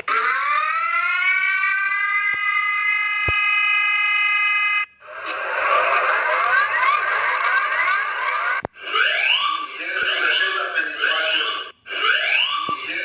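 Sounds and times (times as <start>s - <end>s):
siren tone winding up: 0.0s - 4.9s, 8.6s - 9.8s, 11.6s - 13.0s
harsh alarm with rising sweeps: 1.5s - 4.9s, 8.7s - 13.0s.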